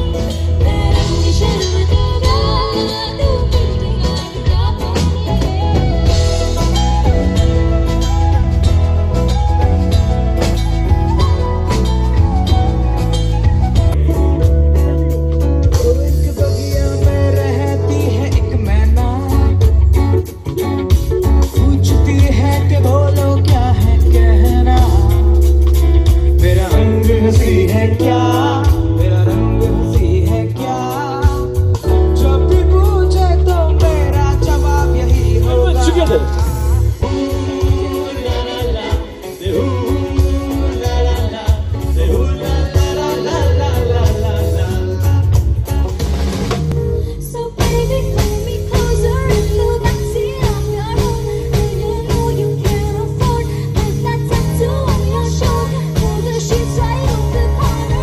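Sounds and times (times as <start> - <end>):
band music with ornamented melody: 0.0 - 58.0
person singing: 13.9 - 45.9.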